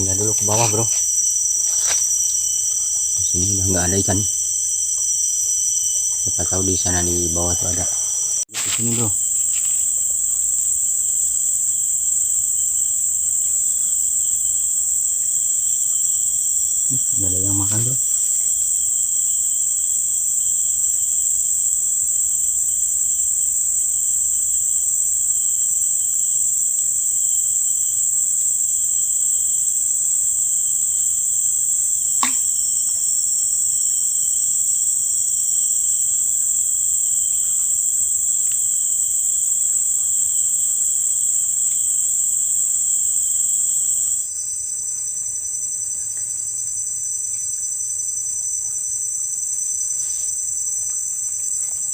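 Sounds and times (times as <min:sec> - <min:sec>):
insects droning: 0:00.0 - 0:51.9
sharp click: 0:32.2 - 0:32.6.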